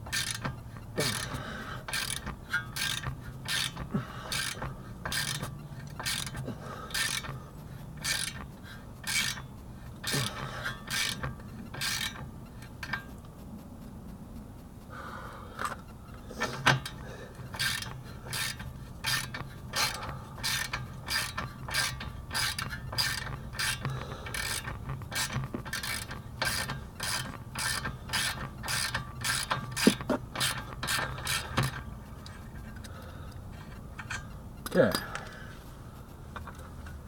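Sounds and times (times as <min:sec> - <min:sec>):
ratchet wrench clicking: 0:00.0 - 0:13.2, 0:16.4 - 0:35.4.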